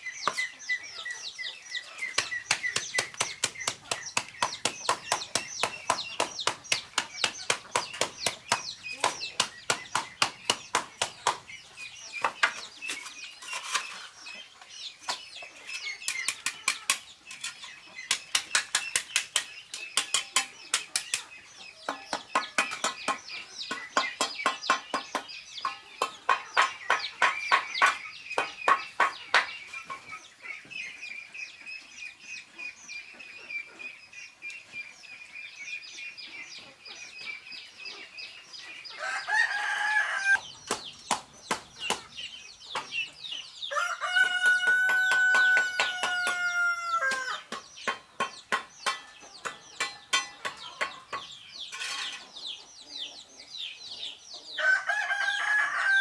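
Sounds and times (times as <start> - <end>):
chickens clucking: 0.0 - 56.0
rapid tool strikes: 2.1 - 11.5, 18.1 - 21.3, 40.6 - 43.0, 44.4 - 52.0.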